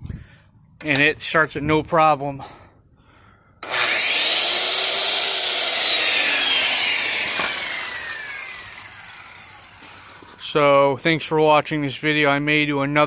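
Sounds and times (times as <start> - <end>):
circular saw whining: 3.6 - 10.9.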